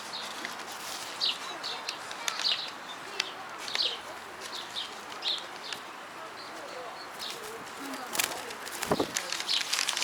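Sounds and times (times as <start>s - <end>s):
small songbirds chirping: 0.0s - 10.0s
faint sharp clicks: 1.8s - 5.9s.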